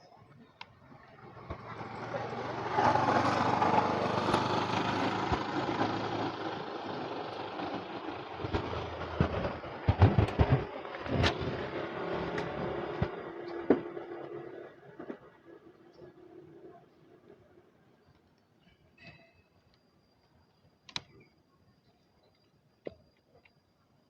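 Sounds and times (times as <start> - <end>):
motor vehicle passing by: 0.8 - 17.3.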